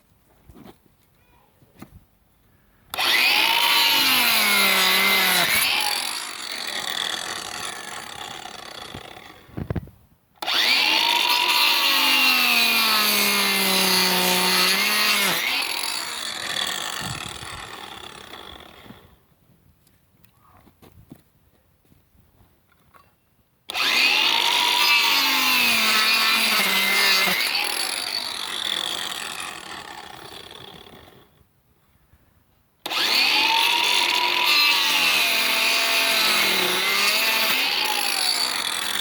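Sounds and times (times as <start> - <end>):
angle grinder cutting branches: 2.9 - 19.2, 23.7 - 31.4, 32.8 - 39.0.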